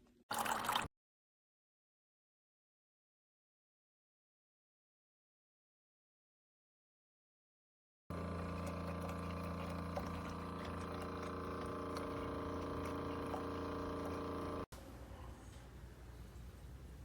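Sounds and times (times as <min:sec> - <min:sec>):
electric machine hum: 0:08.1 - 0:14.7.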